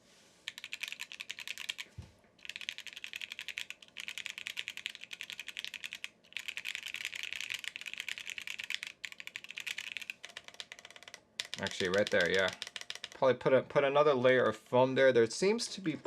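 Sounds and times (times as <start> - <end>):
fast typing on mechanical keyboard: 0.5 - 13.2.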